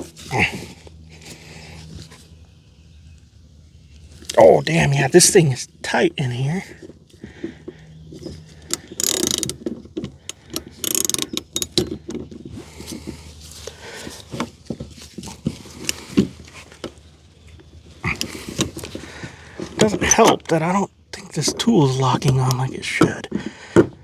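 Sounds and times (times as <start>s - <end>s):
metal tool clicking and scraping: 8.7s - 12.3s.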